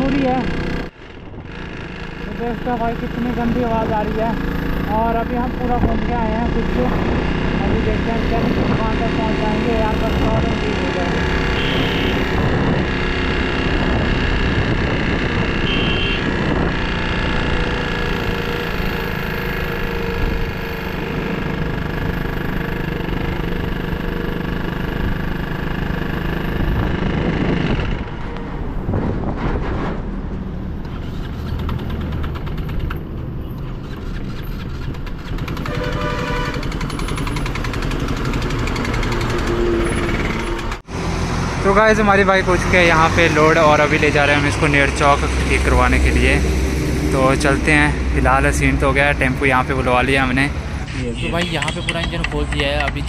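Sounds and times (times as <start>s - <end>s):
damaged motorcycle engine running: 0.0s - 28.9s, 30.7s - 41.0s.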